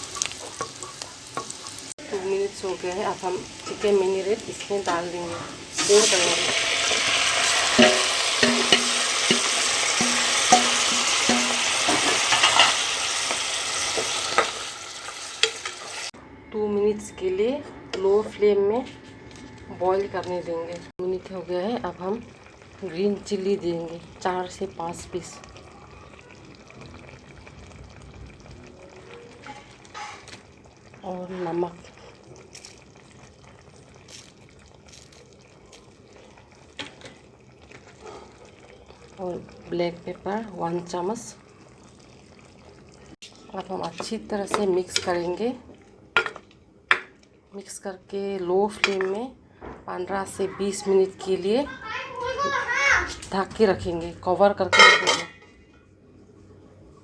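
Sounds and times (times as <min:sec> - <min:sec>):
spoon scraping a pan: 0:00.0 - 0:02.0, 0:03.0 - 0:16.1, 0:29.4 - 0:30.4, 0:54.8 - 0:55.6
curry simmering in a pan: 0:00.0 - 0:05.0, 0:21.0 - 0:47.8
chicken sizzling in a pan: 0:00.0 - 0:16.2.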